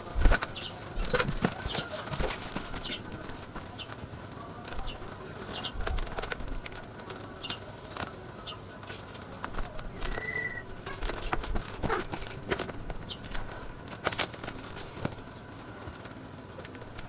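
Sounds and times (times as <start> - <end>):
handling knocks and rustling: 0.0 - 8.2, 8.8 - 17.0
small bird chirping: 10.0 - 10.7.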